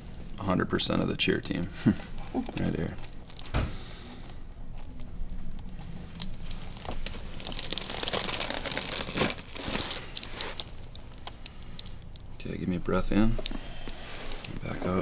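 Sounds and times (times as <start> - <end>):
rustling and crinkling: 1.9 - 12.2, 13.4 - 15.0.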